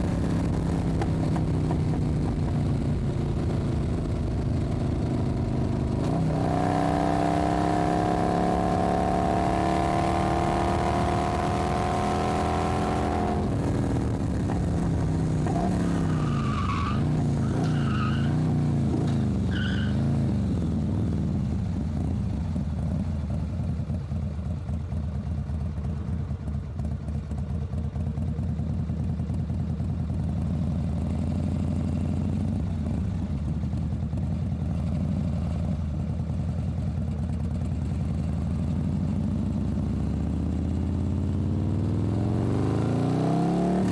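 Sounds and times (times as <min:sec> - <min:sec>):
motorcycle engine revving: 0:00.0 - 0:23.0, 0:38.6 - 0:43.9.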